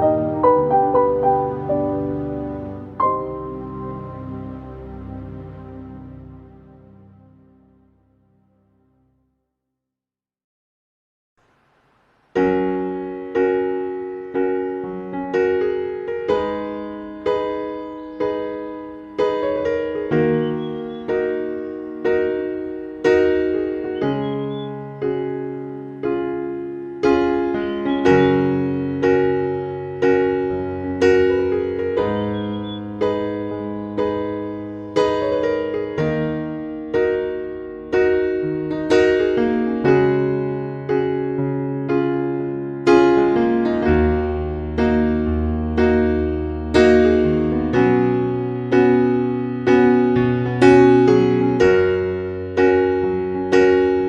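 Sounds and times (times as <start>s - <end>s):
gentle piano chords: 0.0s - 8.4s, 12.3s - 54.0s.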